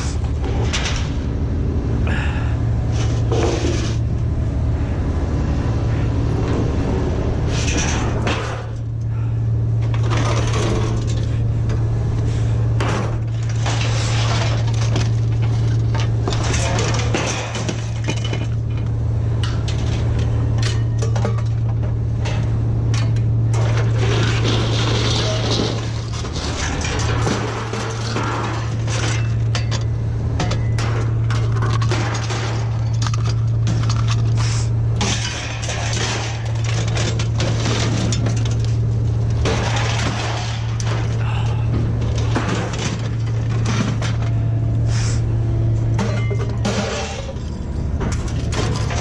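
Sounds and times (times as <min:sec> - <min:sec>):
steady low hum: 0:00.0 - 0:49.0
scrap metal clanking: 0:12.3 - 0:18.8, 0:19.4 - 0:45.3, 0:45.9 - 0:49.0.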